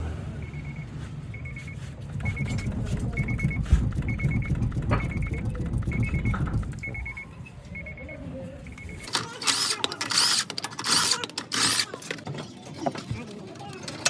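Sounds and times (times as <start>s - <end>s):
low vehicle rumble: 0.0s - 9.0s
electronic warning beep: 0.4s - 10.3s
heavy thump: 2.2s - 7.2s
scattered knocks: 2.2s - 7.2s.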